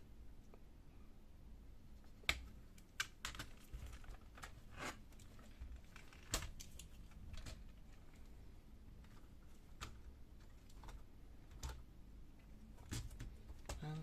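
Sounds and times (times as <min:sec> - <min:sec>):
clicks and taps of laptop parts: 0:02.2 - 0:04.6, 0:12.8 - 0:13.8.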